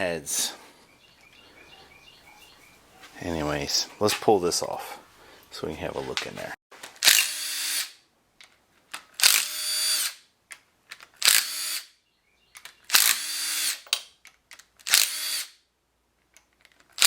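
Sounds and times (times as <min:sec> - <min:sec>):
power drill bursts: 0:07.0 - 0:07.9, 0:09.2 - 0:10.2, 0:11.2 - 0:11.9, 0:12.9 - 0:13.8, 0:14.9 - 0:15.5.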